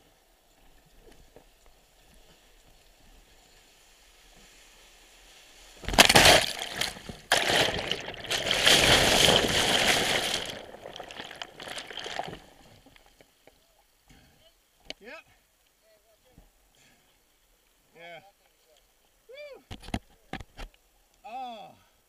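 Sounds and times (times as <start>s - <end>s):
sea water crashing and sloshing: 5.8s - 13.0s.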